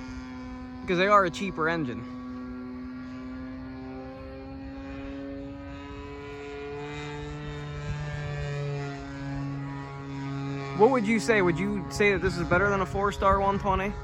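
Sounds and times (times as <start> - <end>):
low steady hum: 0.0 - 14.0
model airplane engine droning: 0.0 - 14.0.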